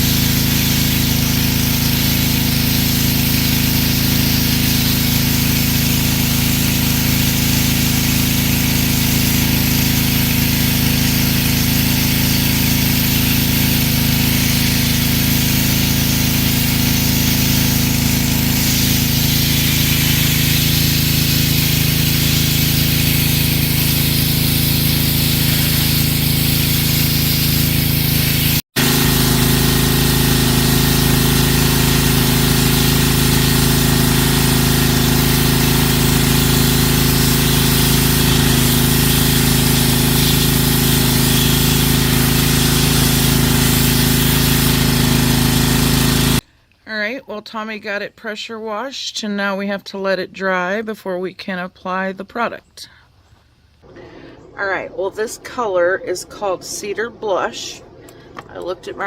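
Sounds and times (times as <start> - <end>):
pressure washer engine hum: 0.0 - 46.4, 53.8 - 59.0
water spray hiss: 0.0 - 46.4.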